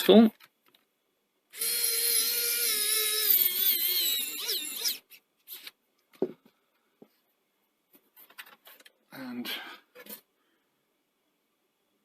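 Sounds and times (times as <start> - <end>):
electric screwdriver whining: 1.6 - 5.0.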